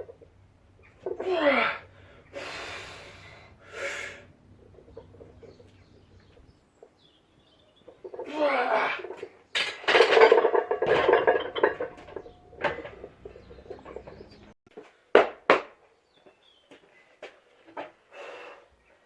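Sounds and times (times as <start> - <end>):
metal gym weights clanking: 9.0 - 14.5.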